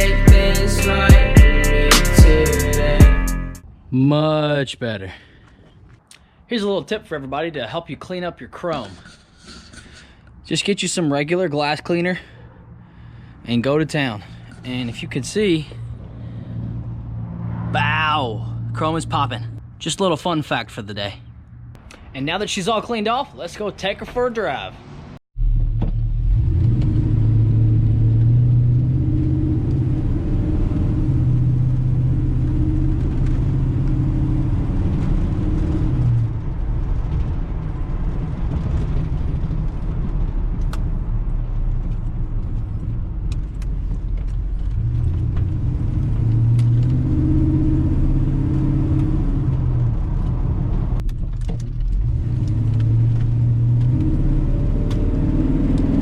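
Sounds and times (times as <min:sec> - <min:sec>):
truck engine droning: 0:00.0 - 0:03.6, 0:12.2 - 0:22.0, 0:24.0 - 0:56.0.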